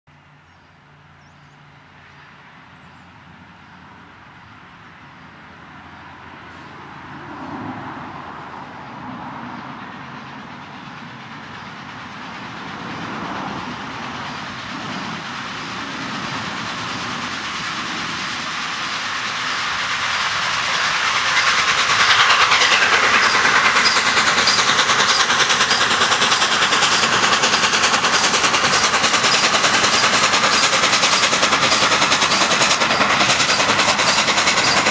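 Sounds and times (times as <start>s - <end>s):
steam locomotive exhaust beats: 8.6s - 34.9s.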